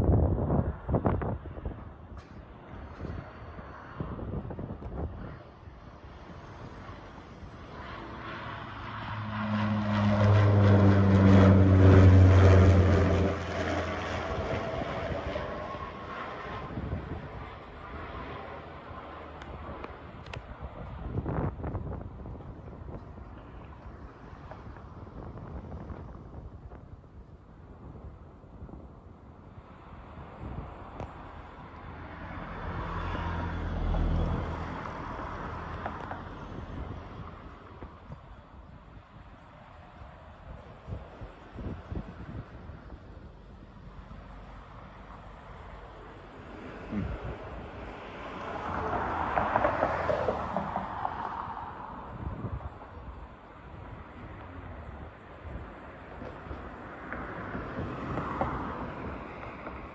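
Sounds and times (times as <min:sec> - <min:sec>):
propeller aircraft flying over: 0:00.0 - 0:59.9
vehicle passing by: 0:06.0 - 0:20.0, 0:29.7 - 0:38.0, 0:43.8 - 0:53.1.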